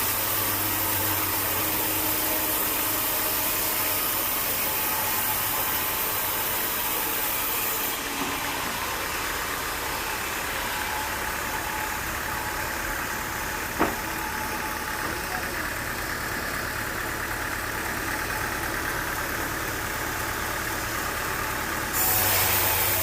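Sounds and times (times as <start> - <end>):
machine engine running: 0.0 - 23.0
high hiss: 22.0 - 23.0.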